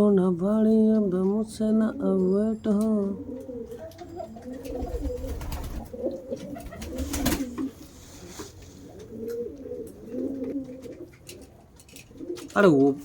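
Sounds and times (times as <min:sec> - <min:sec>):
pigeons cooing: 0:02.9 - 0:13.0.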